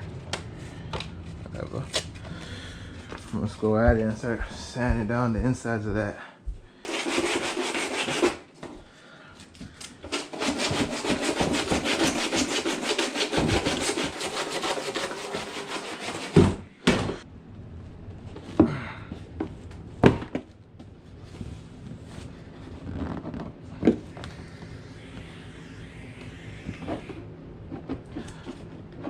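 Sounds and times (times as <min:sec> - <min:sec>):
sandpaper rubbing on plastic: 0:06.9 - 0:08.5, 0:10.1 - 0:16.6.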